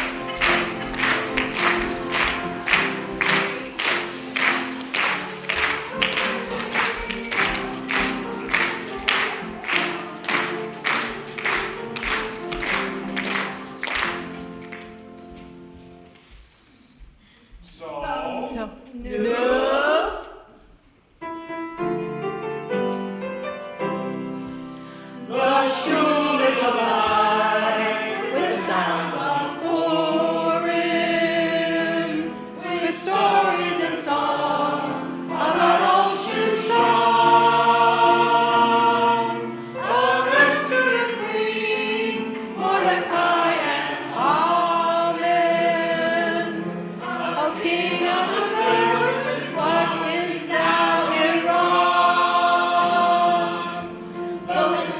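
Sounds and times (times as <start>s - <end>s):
group of voices singing: 0.0s - 14.4s, 17.8s - 20.5s, 25.2s - 54.9s
instrumental accompaniment: 0.0s - 16.5s.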